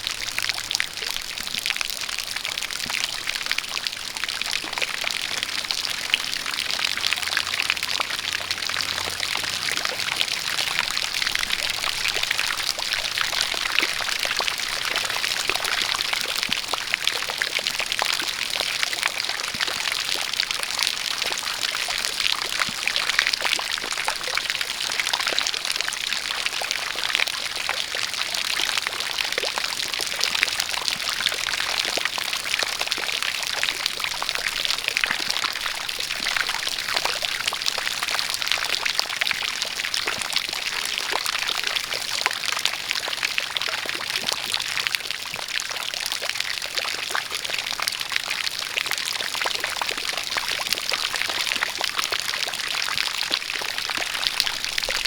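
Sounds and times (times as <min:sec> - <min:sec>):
drips and splashes: 0:00.0 - 0:55.0
rain falling: 0:00.0 - 0:55.0.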